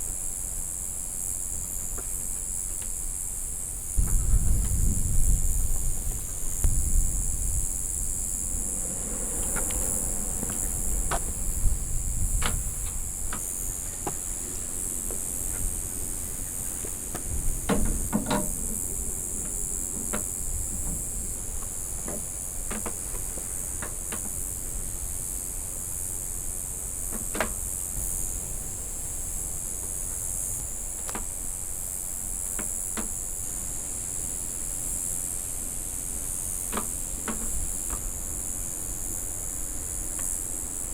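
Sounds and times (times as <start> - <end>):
low rumble of wind: 0.0 - 32.6
crickets chirring: 0.0 - 40.9.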